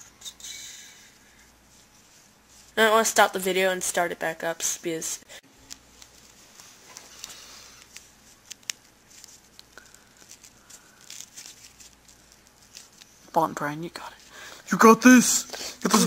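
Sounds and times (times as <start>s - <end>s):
string scratching and tearing: 5.7s - 13.3s.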